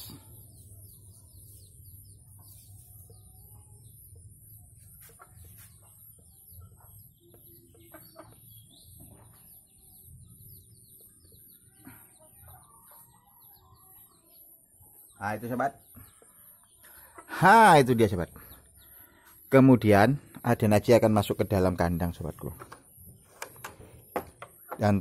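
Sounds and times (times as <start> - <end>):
junglefowl chirping and clucking: 4.8 - 9.5, 12.2 - 14.5, 16.2 - 17.8.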